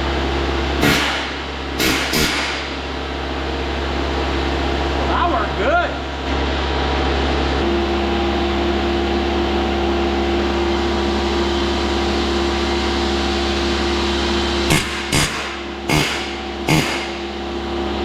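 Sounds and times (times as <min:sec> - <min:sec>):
motor-driven machine droning: 0:00.0 - 0:18.0
sharp metal knock: 0:00.8 - 0:02.7, 0:14.7 - 0:17.2.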